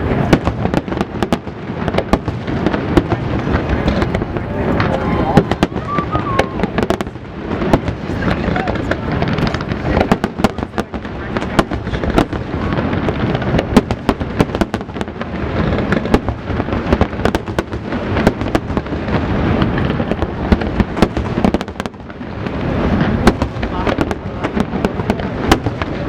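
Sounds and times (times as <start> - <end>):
fireworks bangs and crackles: 0.0 - 26.0
continuous rumble: 1.7 - 14.4.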